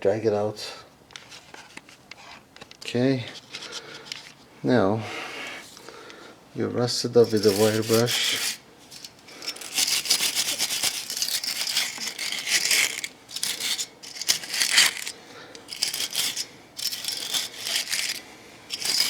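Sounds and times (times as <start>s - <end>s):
wire brush scraping metal: 7.2s - 19.0s.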